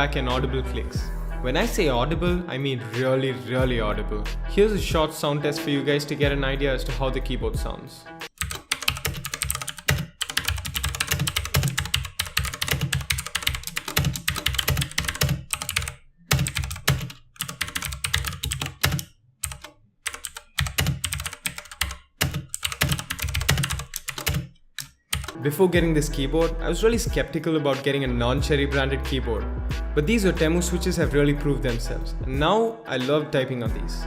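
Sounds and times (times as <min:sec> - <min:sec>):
mechanical keyboard typing: 0:08.4 - 0:25.4.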